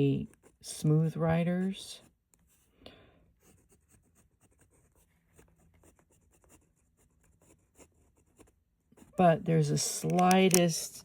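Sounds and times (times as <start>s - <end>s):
pen nib scratching on paper: 0.0s - 1.0s, 3.4s - 10.7s.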